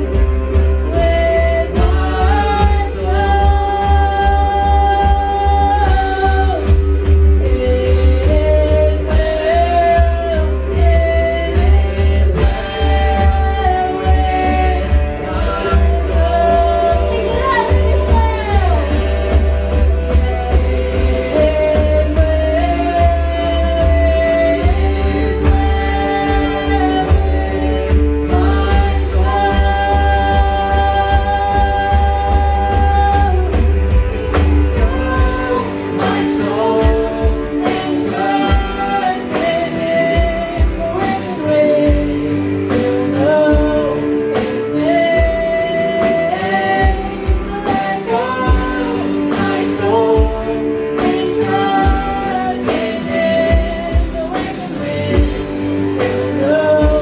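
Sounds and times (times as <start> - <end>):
deep steady bass: 0.0 - 39.4
worship song singing with band: 0.0 - 57.0.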